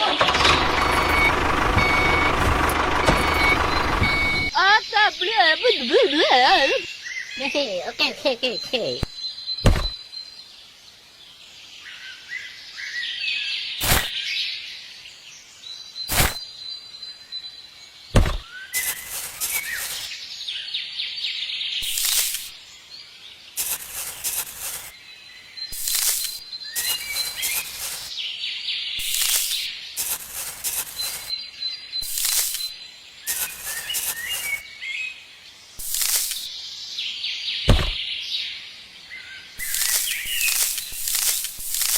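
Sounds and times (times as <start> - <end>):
small birds chirping: 0.0 - 41.9
sharp knocks: 9.6 - 10.0, 18.2 - 18.4, 37.7 - 38.0.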